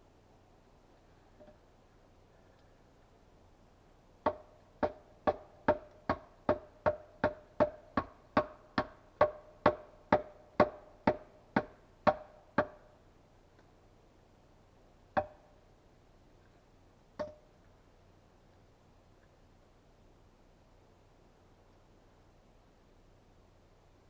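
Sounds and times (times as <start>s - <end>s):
tool knocking on wood: 4.3s - 12.8s.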